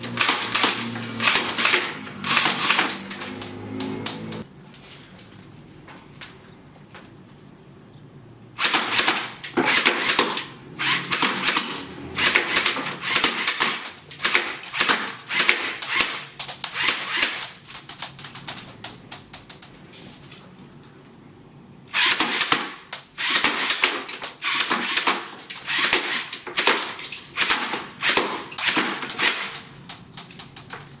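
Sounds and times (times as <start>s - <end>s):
airsoft gun firing bursts: 0.0s - 4.4s, 8.6s - 19.0s, 21.9s - 29.7s.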